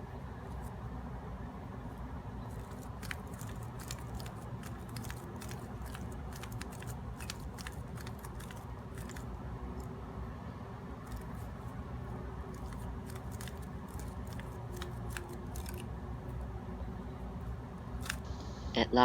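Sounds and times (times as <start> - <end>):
steady low hum: 0.0 - 19.0
puzzle cube clicking: 2.5 - 9.3, 12.5 - 15.9, 18.0 - 18.2.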